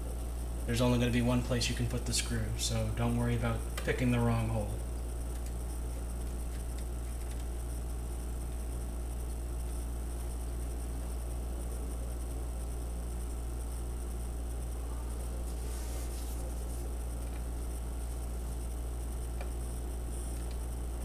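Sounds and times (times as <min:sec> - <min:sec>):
electrical hum with buzz: 0:00.0 - 0:21.0.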